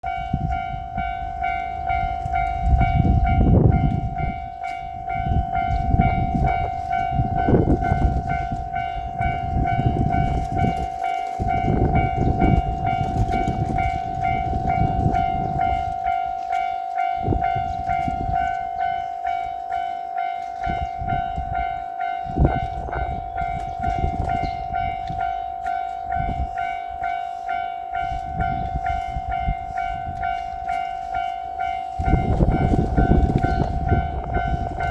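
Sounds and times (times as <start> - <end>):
level crossing bell ringing: 0.0 - 34.9
train wheels rumbling and clattering: 28.0 - 34.9.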